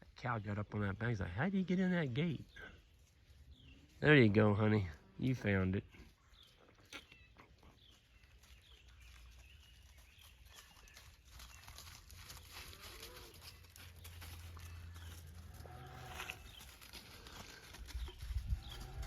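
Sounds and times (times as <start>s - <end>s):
bird chirps: 5.9s - 12.6s
cows calling: 12.6s - 19.0s.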